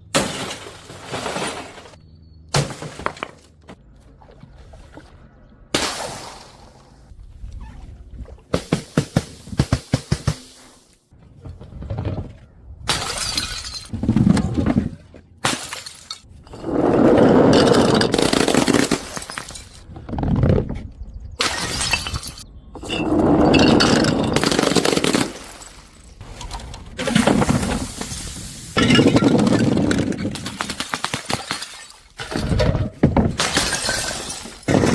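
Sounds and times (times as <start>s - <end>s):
broken glass scattering: 12.9s - 13.9s, 15.4s - 16.3s, 17.8s - 19.8s, 21.4s - 34.9s
glass bottles breaking: 12.9s - 13.9s, 15.4s - 16.7s, 17.5s - 19.8s, 21.4s - 34.9s.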